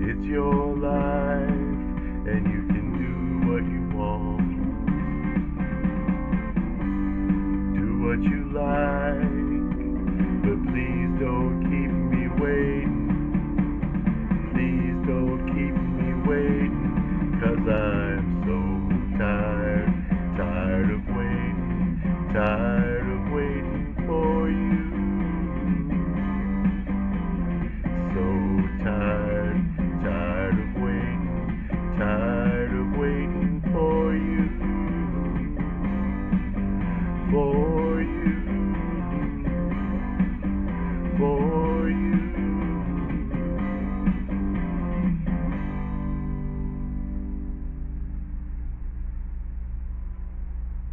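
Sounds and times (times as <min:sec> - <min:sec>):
guitar-led backing music: 0:00.0 - 0:49.0.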